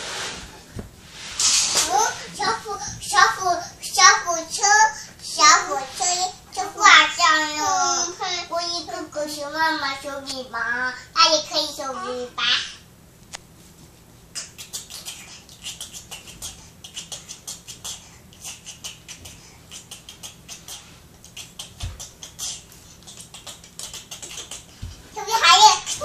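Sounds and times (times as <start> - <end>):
dull thump: 0.7 - 1.0.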